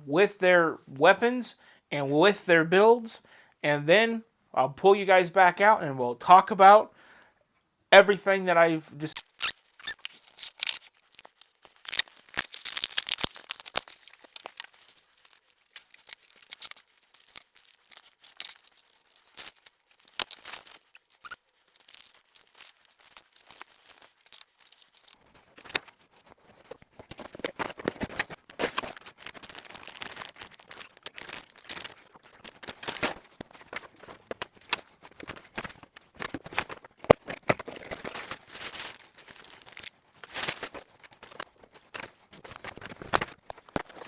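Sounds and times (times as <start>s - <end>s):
plastic crinkling and tearing: 9.2s - 44.0s.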